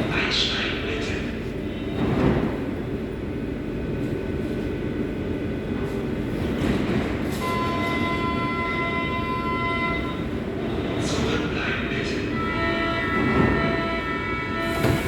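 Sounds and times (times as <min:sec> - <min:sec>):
train rumbling: 0:00.0 - 0:15.0.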